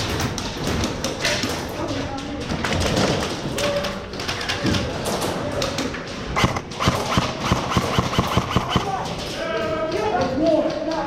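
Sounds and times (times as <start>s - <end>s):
airsoft gun shots: 6.4s - 9.0s.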